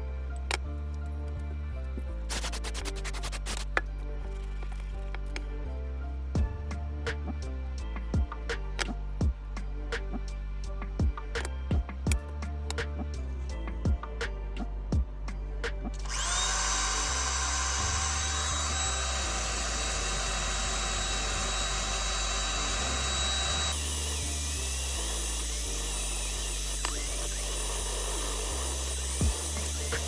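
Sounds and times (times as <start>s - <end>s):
high-pitched power tool running: 16.0s - 30.0s.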